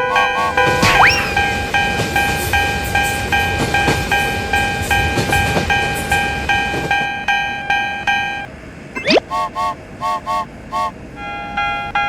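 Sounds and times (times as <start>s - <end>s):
railroad crossing bell clanging: 0.0s - 8.5s, 9.2s - 12.0s
passing train rumble and clatter: 0.0s - 12.0s.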